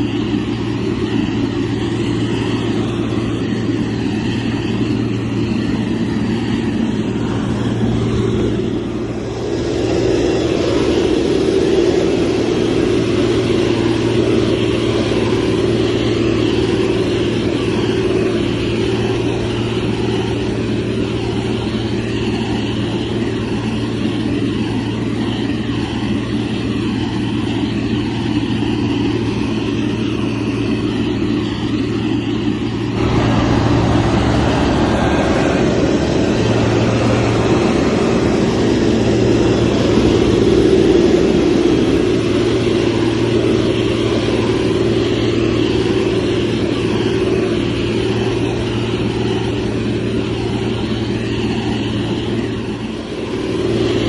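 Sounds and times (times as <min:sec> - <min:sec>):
diesel engine droning: 0:00.0 - 0:54.0.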